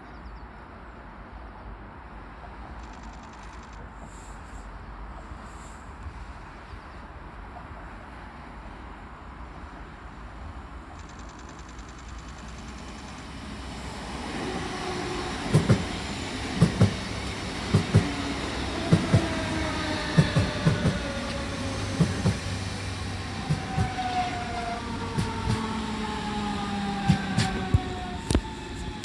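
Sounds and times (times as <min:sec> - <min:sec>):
electric train motor whine: 0:13.4 - 0:29.0
wheels knocking over rail joints: 0:23.4 - 0:24.1.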